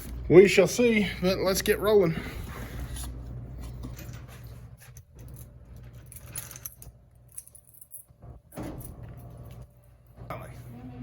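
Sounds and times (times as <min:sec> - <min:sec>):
steady low hum: 0:00.0 - 0:11.0
light metallic clinks and rattles: 0:03.8 - 0:10.2.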